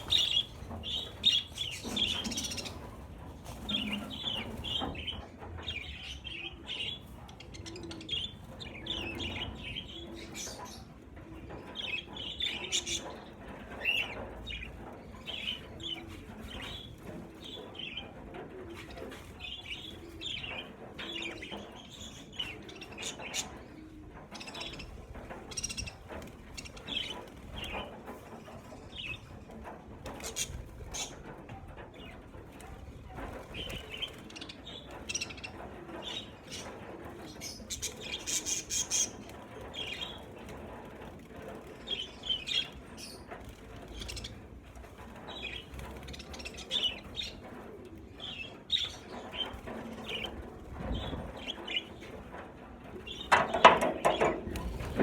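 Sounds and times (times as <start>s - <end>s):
wings flapping: 52.8s - 55.0s.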